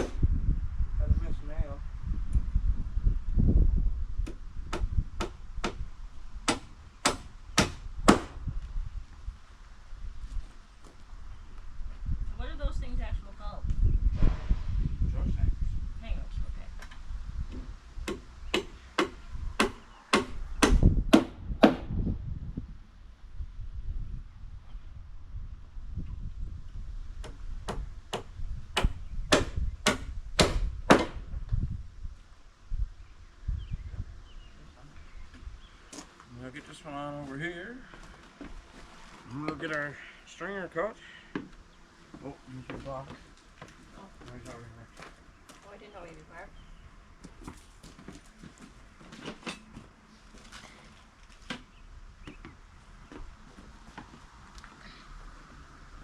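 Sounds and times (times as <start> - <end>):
hammer striking nail: 6.5 - 8.4, 18.0 - 21.9, 27.2 - 31.2.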